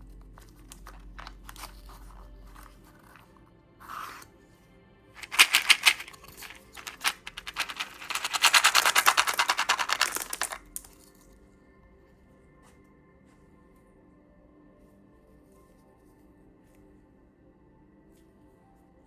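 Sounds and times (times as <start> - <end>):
candy packaging crackling: 0.4 - 3.2, 5.2 - 10.9
fast run of clicks: 5.2 - 10.9.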